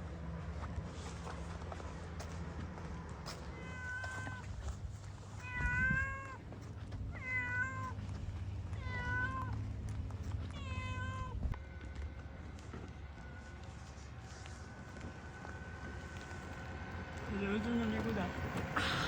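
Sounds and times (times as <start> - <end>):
low steady rumble: 0.0 - 19.0
cat meowing: 3.5 - 4.4, 5.4 - 6.4, 7.1 - 8.0, 8.8 - 9.6, 10.5 - 11.5.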